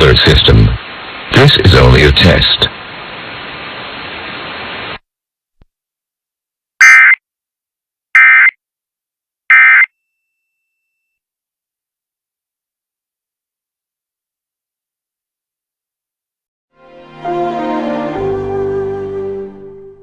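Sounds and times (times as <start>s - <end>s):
radio hiss: 0.0s - 5.0s.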